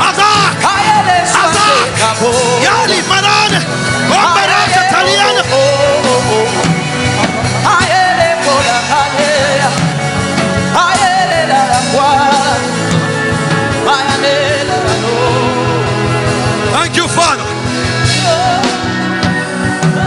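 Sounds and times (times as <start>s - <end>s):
person singing wordless phrases: 0.0s - 9.9s, 10.7s - 12.8s, 13.8s - 17.5s
sustained instrumental worship music: 0.0s - 20.0s.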